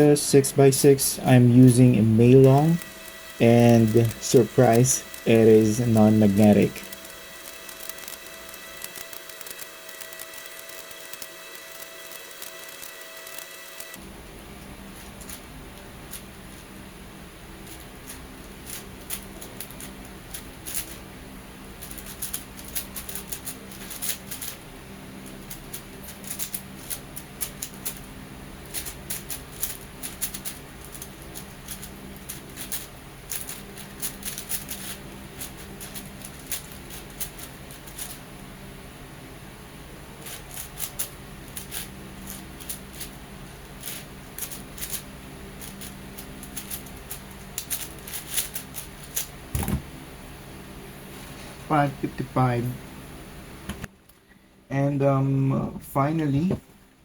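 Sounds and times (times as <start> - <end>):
puzzle cube plastic clicking: 2.6 - 13.9, 28.7 - 38.2, 45.6 - 49.3.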